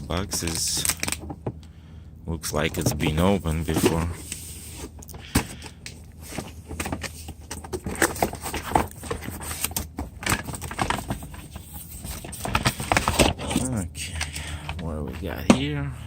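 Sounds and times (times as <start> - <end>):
packaging rustling and knocking: 0.0 - 1.6, 2.7 - 13.7
cardboard box being opened: 2.8 - 5.6, 6.2 - 13.7.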